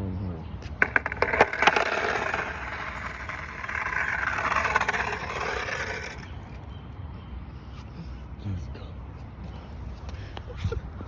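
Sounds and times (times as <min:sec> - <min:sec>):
skateboard wheels grinding on concrete: 0:00.6 - 0:06.7.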